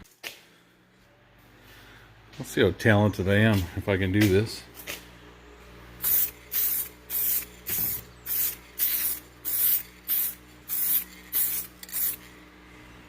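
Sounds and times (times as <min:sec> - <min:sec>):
spray paint hisses: 0:06.0 - 0:12.3.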